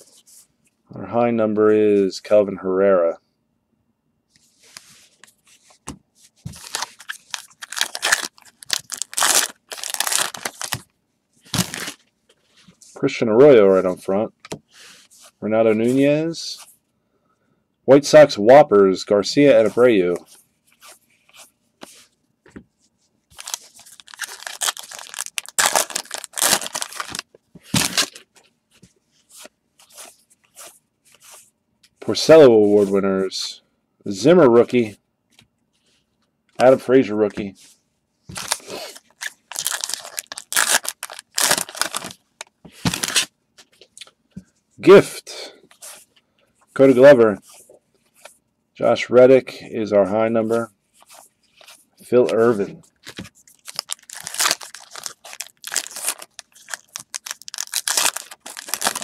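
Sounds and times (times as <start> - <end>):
card pack wrapper ripping: 6.6 - 10.8, 11.5 - 12.0, 23.3 - 28.2, 38.3 - 42.2, 42.8 - 43.3, 53.1 - 59.0.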